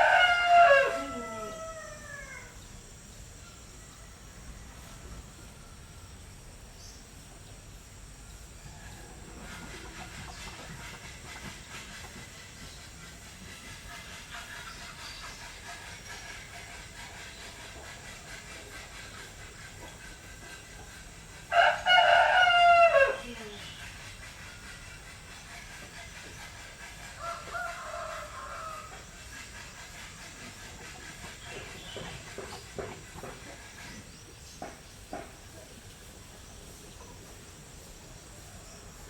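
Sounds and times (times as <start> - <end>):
rooster crowing: 0.0 - 2.6, 8.6 - 9.6, 21.5 - 23.3, 27.2 - 29.1
background hiss: 0.0 - 39.0.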